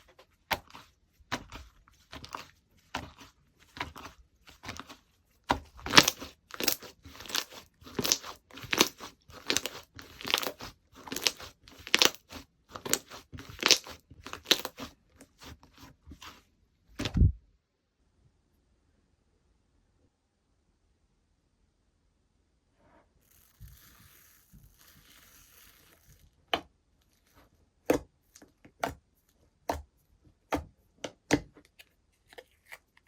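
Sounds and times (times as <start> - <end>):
slime clicking and crackling: 5.5 - 14.9.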